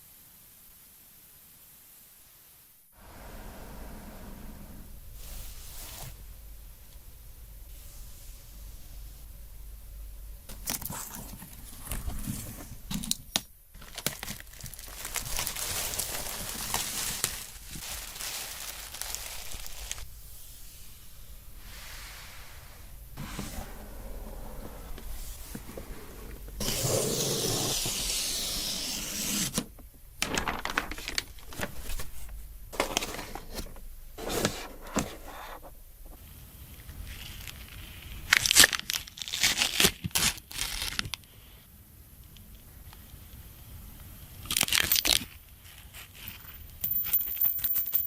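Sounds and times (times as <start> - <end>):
packaging ripping: 13.8 - 20.0, 38.3 - 41.3
packaging rustling and crinkling: 13.8 - 20.1, 29.5 - 35.6.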